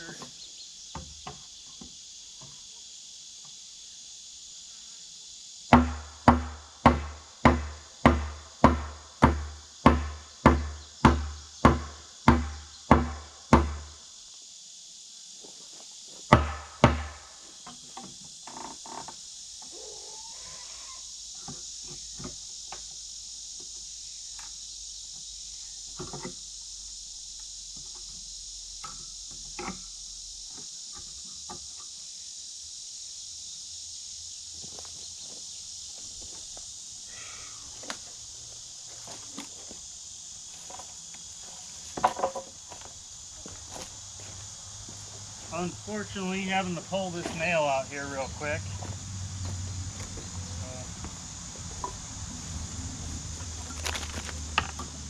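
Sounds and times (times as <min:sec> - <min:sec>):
crickets chirring: 0:00.0 - 0:55.0
hammer driving nail into wood: 0:16.3 - 0:17.2.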